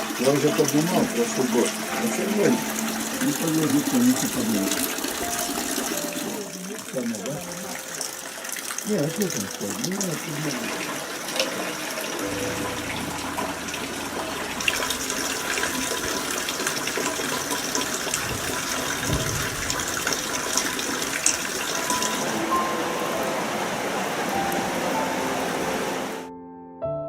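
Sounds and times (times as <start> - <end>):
faint music: 0.0 - 19.4
heavy rain pouring: 0.0 - 26.3.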